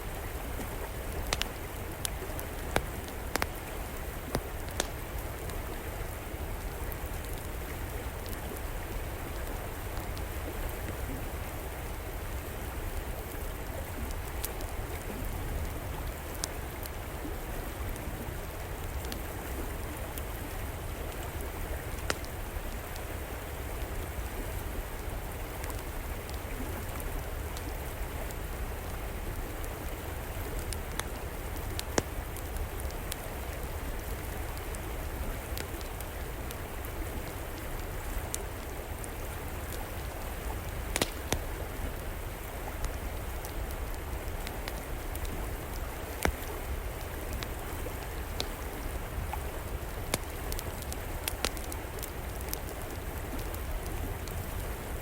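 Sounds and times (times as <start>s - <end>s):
river flowing: 0.0s - 55.0s
wood fire crackling and popping: 0.5s - 5.8s, 12.6s - 17.0s, 21.1s - 23.1s, 28.8s - 54.6s.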